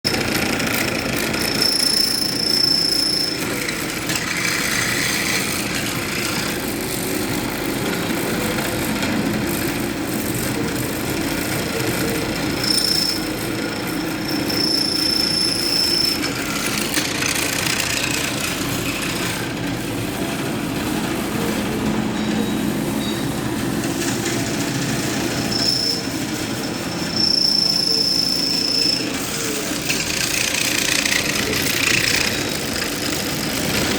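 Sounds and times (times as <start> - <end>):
drilling machine running: 0.1 - 33.9
high squeal: 1.4 - 5.6, 12.6 - 18.4, 22.2 - 23.4, 25.3 - 32.6.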